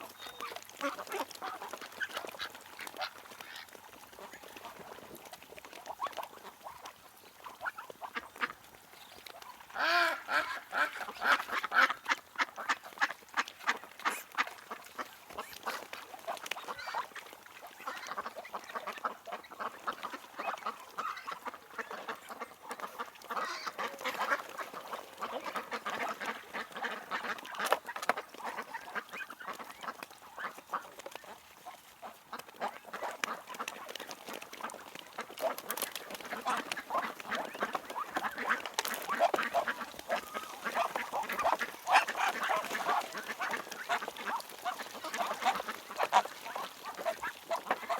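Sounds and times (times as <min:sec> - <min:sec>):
ducks quacking: 0:00.0 - 0:08.6, 0:09.4 - 0:47.9.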